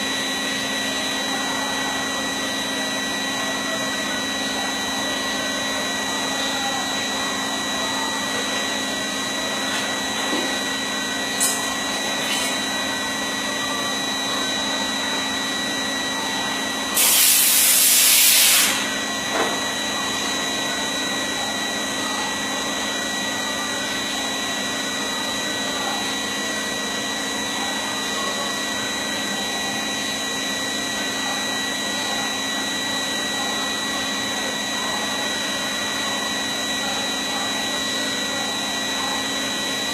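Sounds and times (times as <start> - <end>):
cnc machine hum with high whine: 0.0 - 39.9
loud hiss: 17.0 - 18.9.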